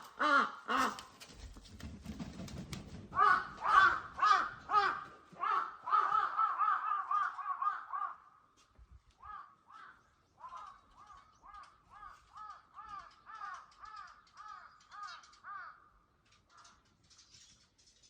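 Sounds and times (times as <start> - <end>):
crow cawing: 0.0 - 1.2, 3.2 - 8.5, 9.2 - 16.8.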